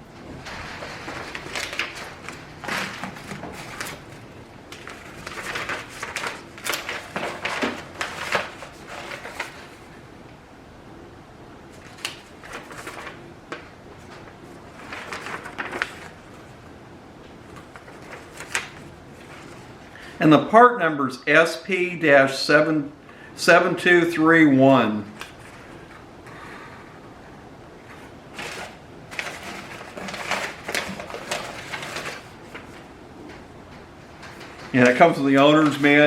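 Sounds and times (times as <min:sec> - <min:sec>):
packaging rustling: 0:00.2 - 0:09.8, 0:11.8 - 0:16.6, 0:17.5 - 0:19.9, 0:27.9 - 0:33.4.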